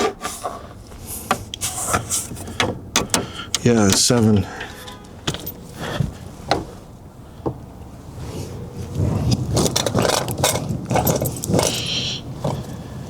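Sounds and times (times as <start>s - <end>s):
metal hand tools clinking: 2.4s - 6.0s, 10.0s - 12.0s.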